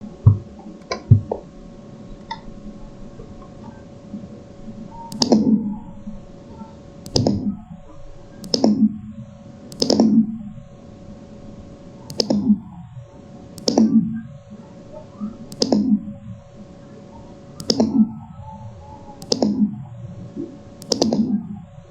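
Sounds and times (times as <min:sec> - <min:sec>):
fireworks small pops: 0:05.1 - 0:05.7, 0:09.7 - 0:10.6.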